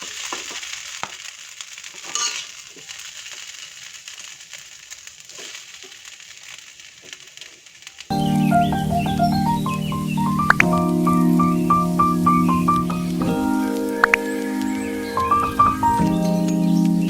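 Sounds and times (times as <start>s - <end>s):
food sizzling in a pan: 0.0s - 17.0s
background music: 8.1s - 17.0s.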